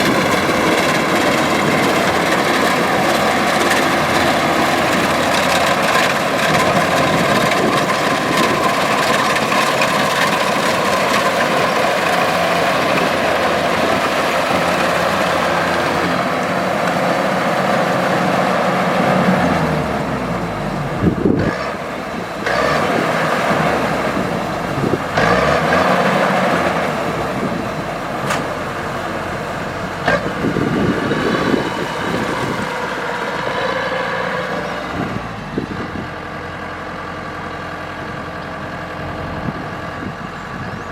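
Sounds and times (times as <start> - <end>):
combine harvester running: 0.0 - 40.9.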